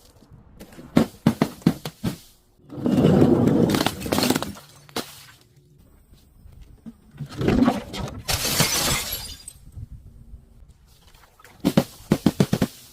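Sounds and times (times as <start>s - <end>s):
glass bottle crushing: 8.3s - 9.6s
glass shattering: 8.3s - 9.6s.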